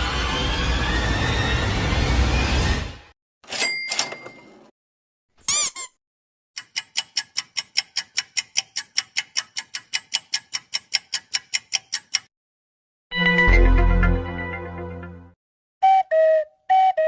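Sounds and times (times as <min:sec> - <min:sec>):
clock ticking: 0:06.6 - 0:12.3.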